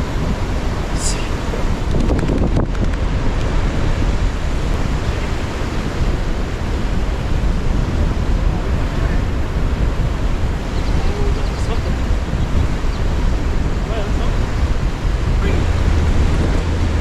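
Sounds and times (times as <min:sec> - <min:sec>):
breaking surf: 0:00.0 - 0:17.0
wind buffeting the microphone: 0:00.0 - 0:17.0.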